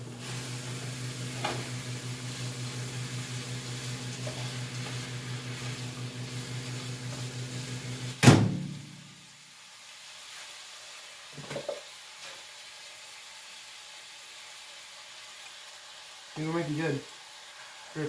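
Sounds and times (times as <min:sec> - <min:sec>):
microwave oven humming: 0:00.0 - 0:09.3
loud clunk: 0:08.2 - 0:09.0.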